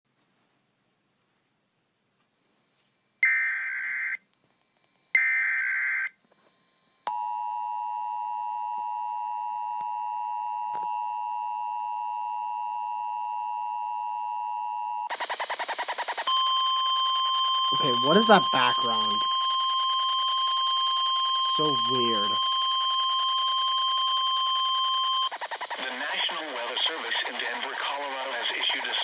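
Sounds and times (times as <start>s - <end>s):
digital data bursts: 15.1s - 29.0s
two-tone attention signal: 16.3s - 25.3s.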